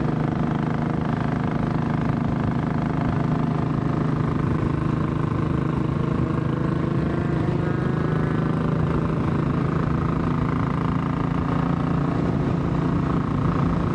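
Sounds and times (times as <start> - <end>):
motorcycle engine running: 0.0 - 13.9.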